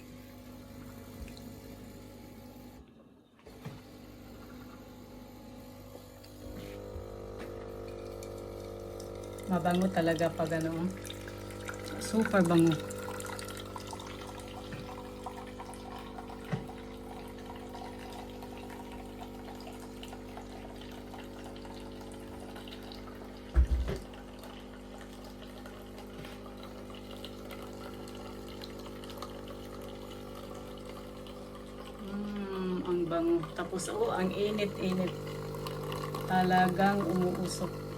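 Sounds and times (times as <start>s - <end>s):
coffee machine pump humming: 0.0s - 37.9s
coffee pouring into cup: 6.2s - 37.9s
thump: 23.5s - 24.0s.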